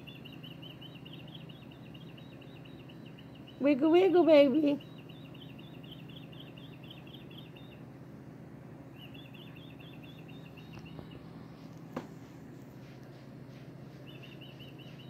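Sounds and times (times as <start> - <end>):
bird chirping through speaker: 0.0 - 7.8, 8.9 - 11.3, 14.0 - 15.0
low steady hum: 0.0 - 15.0.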